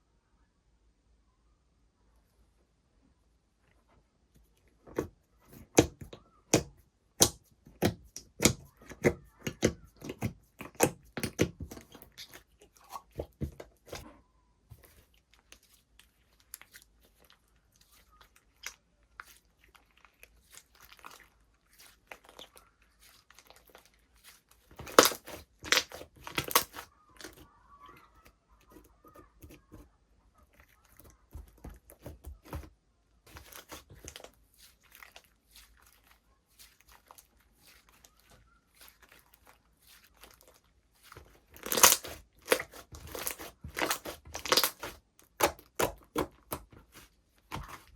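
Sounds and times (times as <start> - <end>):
slime popping and crackling: 5.5 - 14.0, 18.4 - 27.4, 33.3 - 47.9.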